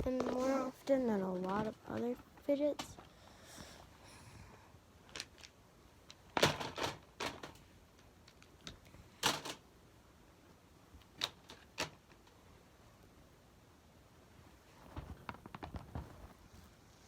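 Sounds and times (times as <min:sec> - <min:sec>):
fidget toys clicking and clattering: 0:00.1 - 0:03.1.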